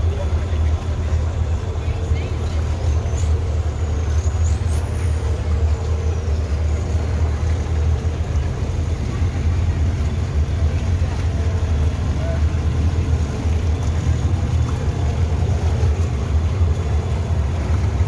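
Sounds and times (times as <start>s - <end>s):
outboard engines running: 0.0s - 18.0s
rushing water noise: 0.0s - 18.0s.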